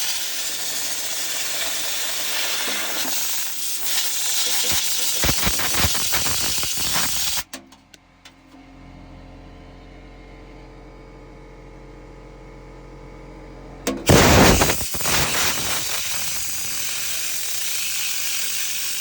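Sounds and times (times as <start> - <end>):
loud hissing air jet: 0.0 - 7.5, 14.1 - 19.0.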